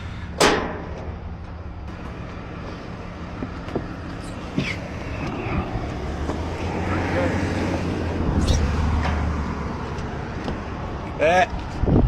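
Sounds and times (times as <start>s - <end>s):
vehicle engine humming: 1.9s - 11.0s
sharp knock: 8.4s - 9.2s.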